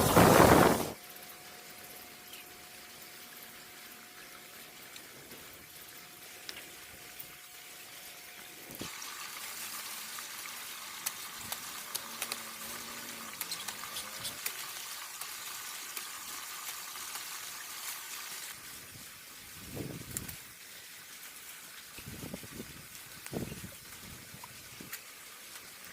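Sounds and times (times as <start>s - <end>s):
grinder hissing and crackling: 0.0s - 1.0s.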